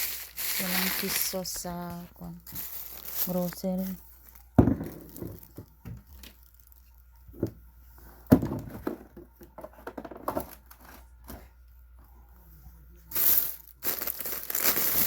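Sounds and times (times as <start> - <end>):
grocery bags rustling and crinkling: 0.0 - 7.0, 13.1 - 15.0
items knocking when handled: 4.6 - 6.2, 8.3 - 11.4.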